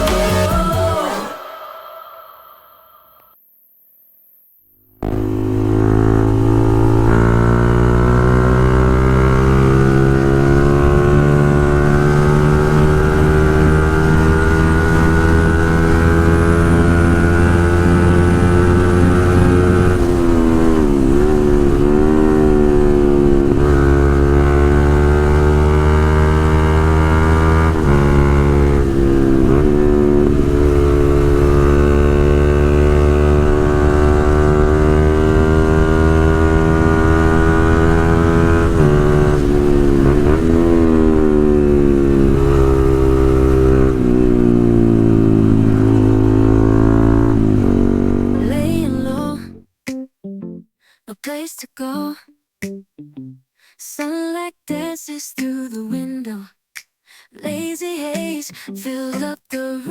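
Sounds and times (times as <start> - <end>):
motorcycle engine running: 5.0 - 49.6.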